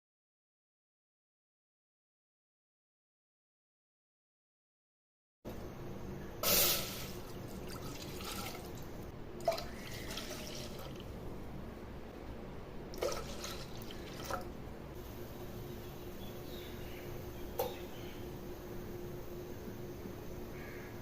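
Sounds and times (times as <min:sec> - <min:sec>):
low steady hum: 0:05.5 - 0:21.0
water splashing: 0:07.1 - 0:11.2, 0:13.0 - 0:14.5.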